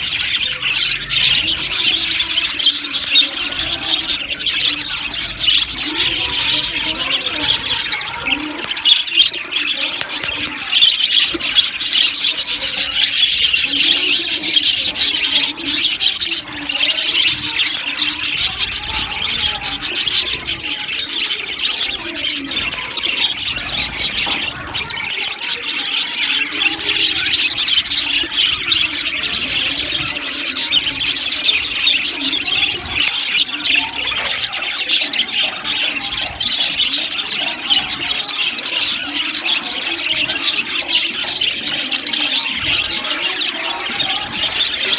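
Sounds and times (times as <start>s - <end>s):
flock of budgerigars chattering: 0.0s - 44.9s.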